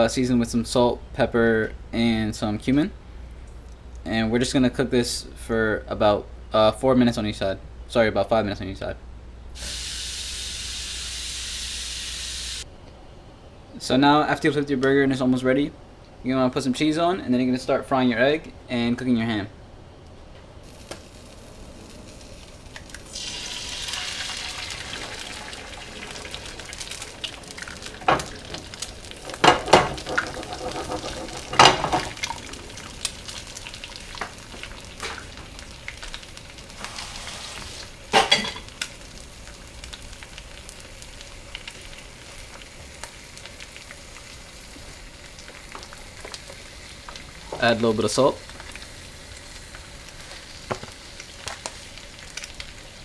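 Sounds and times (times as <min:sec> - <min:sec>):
food sizzling in a pan: 0:09.6 - 0:12.6, 0:20.6 - 0:53.0.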